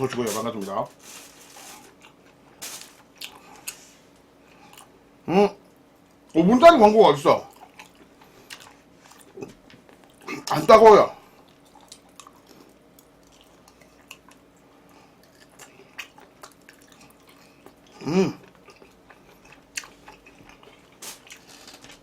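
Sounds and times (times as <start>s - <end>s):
chewing with wet mouth clicks: 7.5s - 10.2s, 11.4s - 21.4s.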